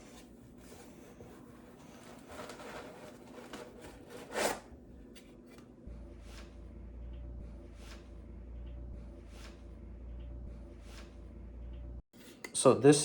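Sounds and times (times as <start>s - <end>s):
packaging rustling and sliding: 0.0s - 4.7s
low hum: 4.7s - 12.0s.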